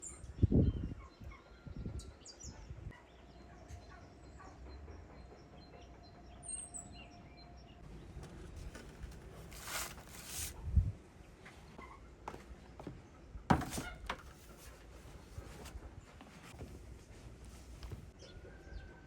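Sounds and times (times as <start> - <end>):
rustle: 8.6 - 10.6.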